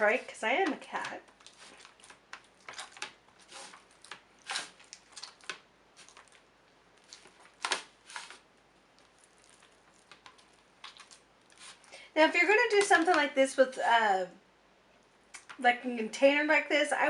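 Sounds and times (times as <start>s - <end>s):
hands kneading sticky clay: 0.0s - 11.9s
soft squishes and taps: 0.1s - 11.9s.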